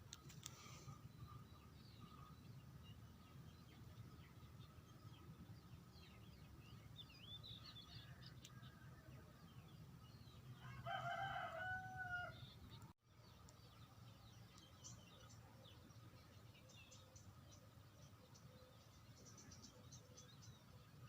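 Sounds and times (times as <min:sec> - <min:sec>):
rooster crowing: 0:10.6 - 0:12.4.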